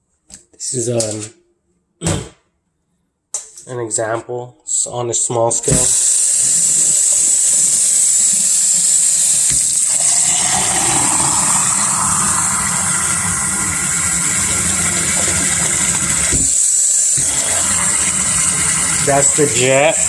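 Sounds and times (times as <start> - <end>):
hose water jetting into water: 5.7 - 20.0.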